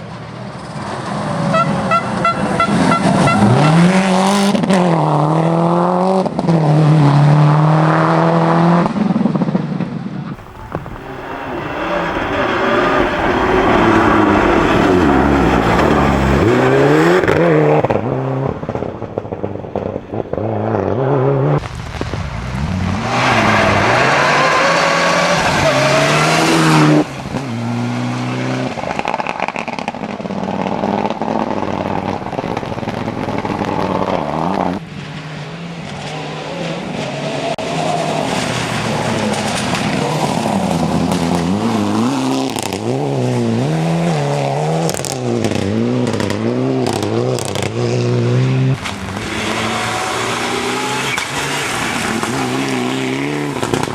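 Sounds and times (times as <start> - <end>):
rally car engines revving: 0.0 - 53.9
tyre squeal: 10.4 - 16.8.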